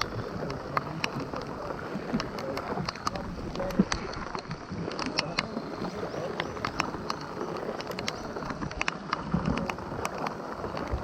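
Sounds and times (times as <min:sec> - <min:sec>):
rain falling: 0:00.0 - 0:10.0
raindrops tapping close by: 0:00.0 - 0:11.0.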